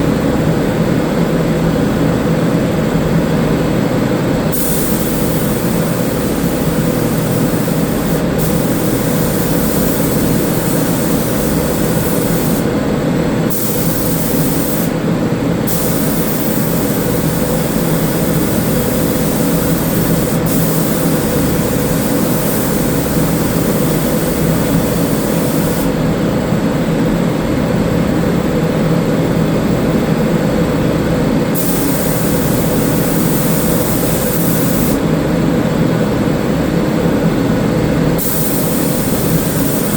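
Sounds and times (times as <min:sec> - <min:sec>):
loud mechanical drone: 0:04.4 - 0:26.6
paint spray gun hissing: 0:04.5 - 0:12.7, 0:13.5 - 0:15.0, 0:15.6 - 0:26.0, 0:31.6 - 0:35.0, 0:38.2 - 0:39.9.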